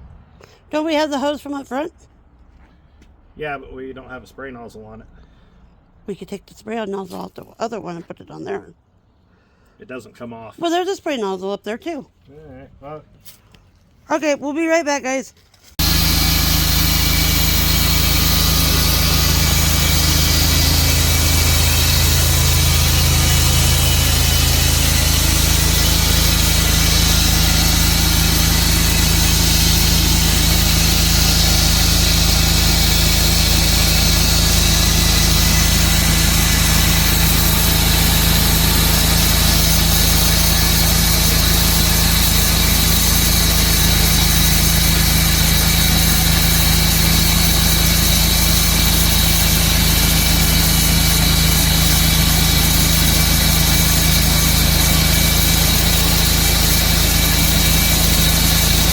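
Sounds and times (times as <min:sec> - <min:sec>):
sawmill engine running: 0:15.8 - 0:58.9.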